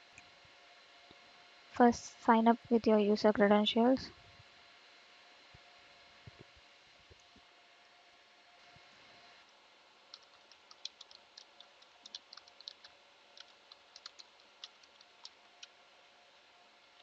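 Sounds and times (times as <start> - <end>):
faint keyboard typing: 10.1 - 15.8.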